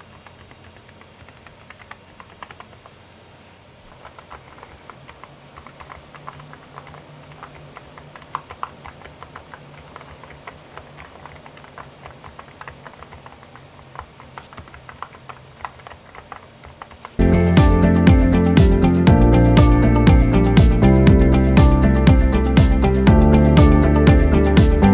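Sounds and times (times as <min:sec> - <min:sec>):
keyboard typing: 0:00.0 - 0:03.0, 0:03.8 - 0:18.0.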